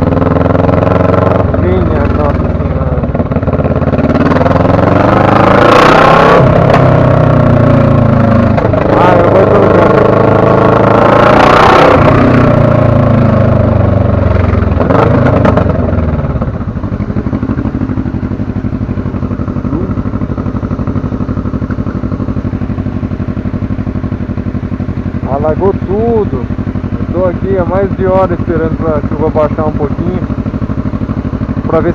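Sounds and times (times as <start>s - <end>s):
motorcycle engine idling: 0.0s - 5.4s, 6.4s - 10.9s, 12.1s - 31.9s
motorcycle engine accelerating: 0.0s - 31.9s.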